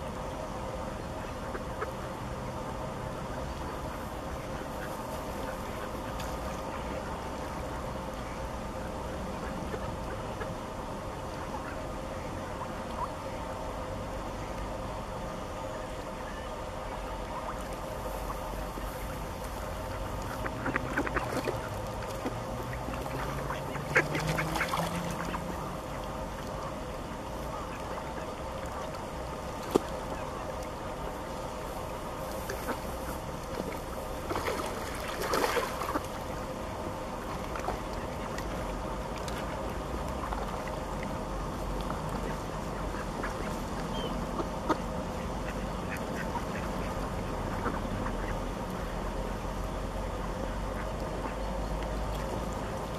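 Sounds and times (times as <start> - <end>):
steady low hum: 0.0 - 52.9
ducks calling: 15.2 - 41.0, 42.0 - 52.9.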